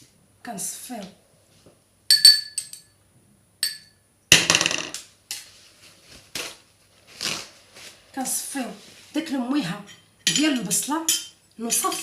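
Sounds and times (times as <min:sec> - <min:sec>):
glass clinking: 0:02.1 - 0:03.0, 0:03.6 - 0:04.0.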